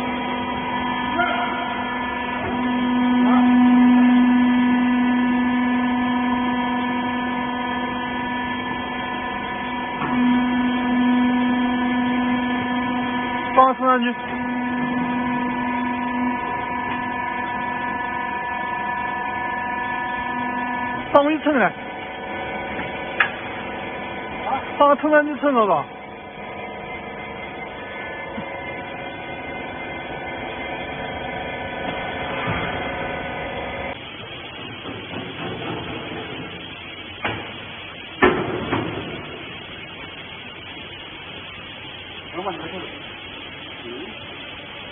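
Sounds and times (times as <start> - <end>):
hydraulic power unit humming: 0.0 - 44.9.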